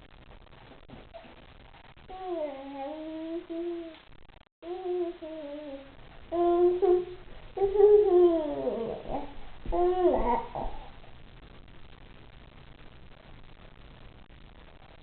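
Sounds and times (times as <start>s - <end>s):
child humming a tune: 2.1s - 4.0s, 4.6s - 10.9s.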